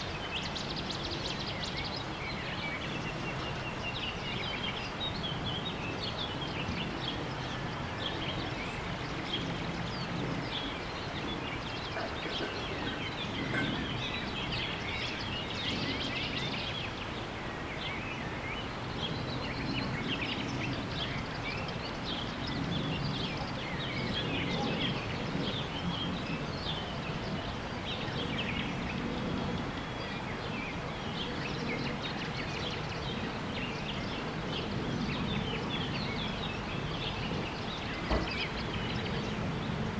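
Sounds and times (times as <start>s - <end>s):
birds chirping: 30.6s - 39.9s.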